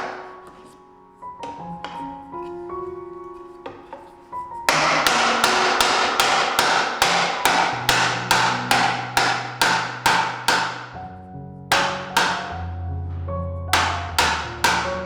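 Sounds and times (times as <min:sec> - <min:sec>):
background music: 0:00.0 - 0:15.0
mallet blows on wood joint: 0:04.7 - 0:11.0, 0:13.8 - 0:15.0.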